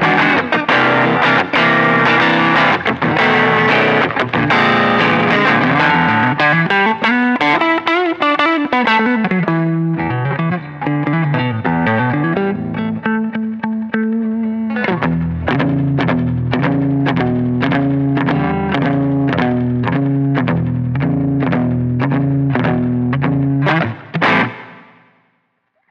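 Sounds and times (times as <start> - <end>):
distorted electric guitar: 0.0 - 25.2.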